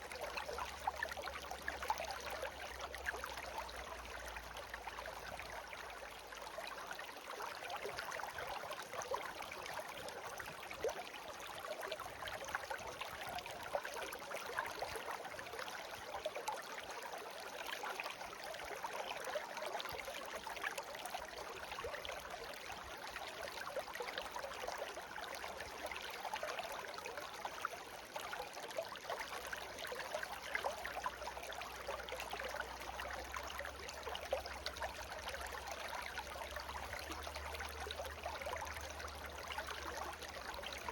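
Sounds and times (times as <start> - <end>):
stream babbling over stones: 0.0 - 40.9.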